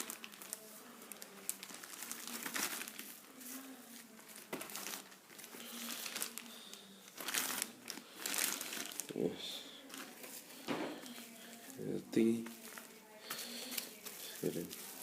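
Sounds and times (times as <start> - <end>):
packaging crinkling and rustling: 0.0 - 15.0.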